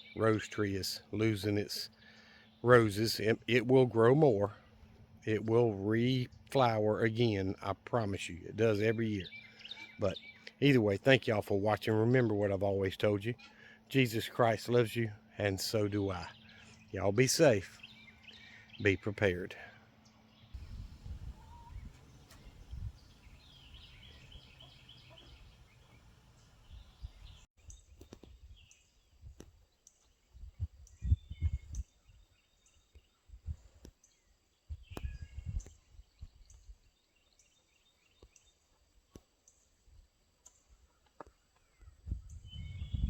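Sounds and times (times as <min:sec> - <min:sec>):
small birds chirping: 0:00.0 - 0:43.0
wind buffeting microphone: 0:20.6 - 0:24.6, 0:30.4 - 0:31.9, 0:34.7 - 0:36.5, 0:41.9 - 0:43.0.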